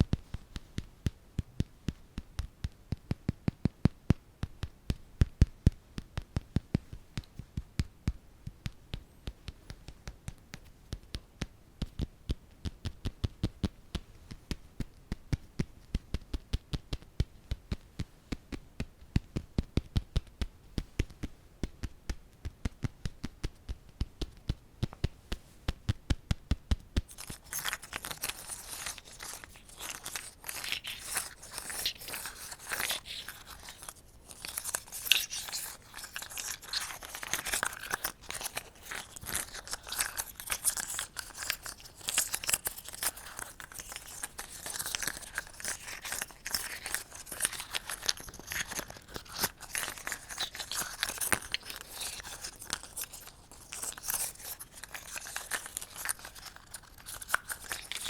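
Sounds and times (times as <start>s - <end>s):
close-up tapping: 0.0s - 29.8s
crackly rustling: 26.6s - 58.0s.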